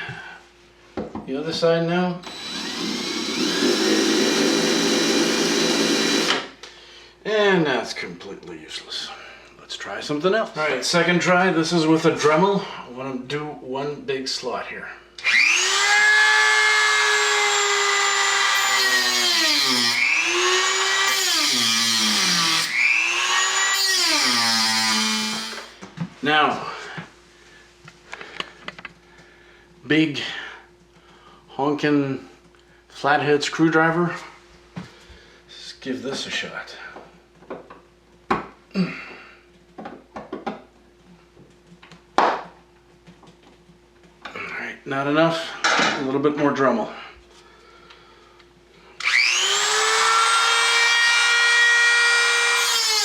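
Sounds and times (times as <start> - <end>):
rotary tool cutting screw: 2.2 - 6.5, 15.2 - 25.7, 49.0 - 53.0.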